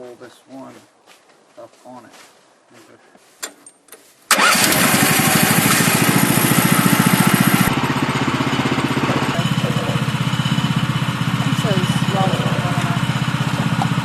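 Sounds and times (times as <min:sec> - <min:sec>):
small engine running: 0:04.3 - 0:14.0.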